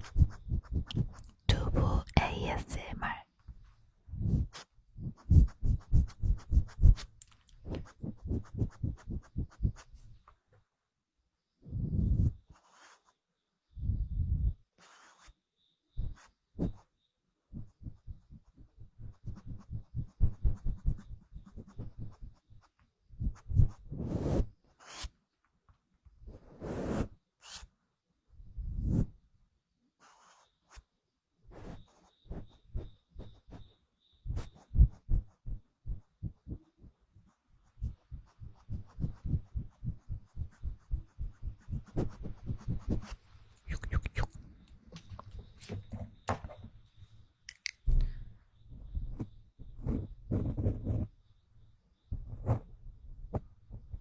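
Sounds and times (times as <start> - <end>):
scratching on an object: 0.0 - 1.3, 4.2 - 10.1, 17.5 - 25.2, 26.2 - 27.7, 31.5 - 43.2, 48.8 - 51.2, 52.1 - 54.0.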